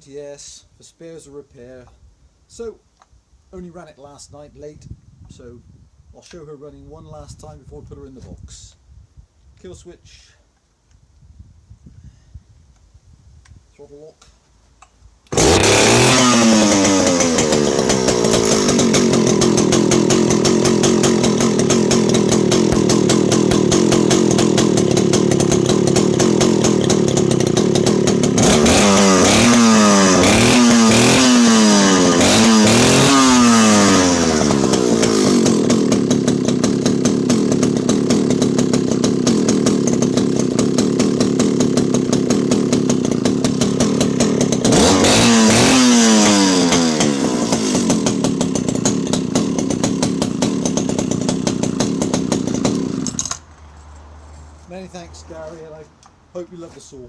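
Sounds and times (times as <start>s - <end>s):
chainsaw revving and idling: 15.3s - 53.5s, 54.6s - 56.8s.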